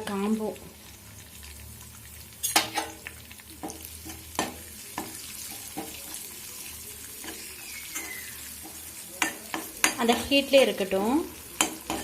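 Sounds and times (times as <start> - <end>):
leaves sizzling in hot oil: 0.0 - 12.0
metal spoon clinking against pan: 7.2 - 10.4, 11.6 - 12.0.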